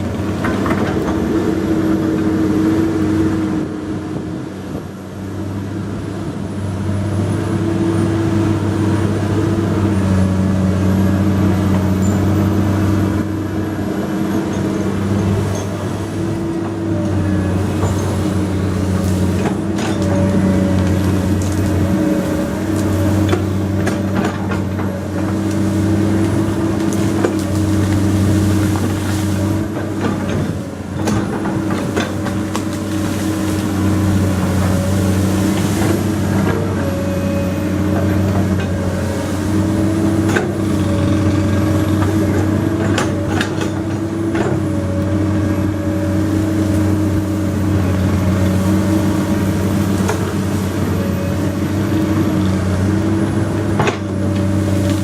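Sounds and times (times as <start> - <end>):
excavator diesel engine: 0.0 - 55.0.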